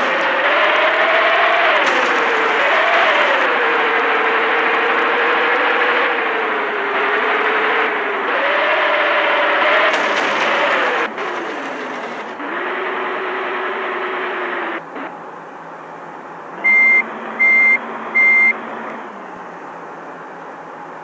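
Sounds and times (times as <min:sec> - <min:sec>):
large vehicle engine running: 0:00.0 - 0:21.0
reversing alarm beeps: 0:16.6 - 0:19.8.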